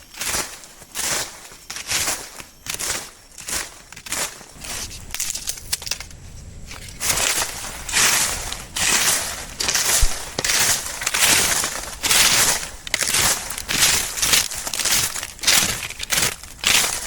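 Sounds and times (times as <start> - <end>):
crunching rustling noise: 0.0 - 17.0.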